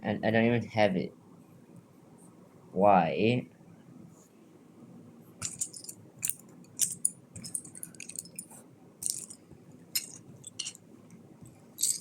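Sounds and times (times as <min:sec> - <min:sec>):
plastic pieces clicking: 0:09.0 - 0:09.4, 0:10.0 - 0:10.8, 0:11.8 - 0:12.0.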